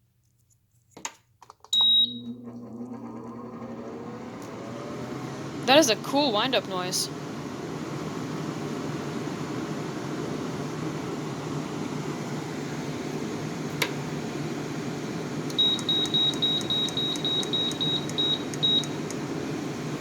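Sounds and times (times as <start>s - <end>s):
air conditioner fan running: 1.9s - 20.0s
click: 15.5s - 19.2s.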